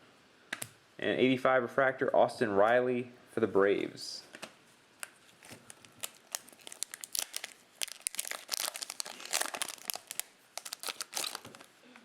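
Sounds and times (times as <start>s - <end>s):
foil wrapper crinkling: 5.0s - 11.7s.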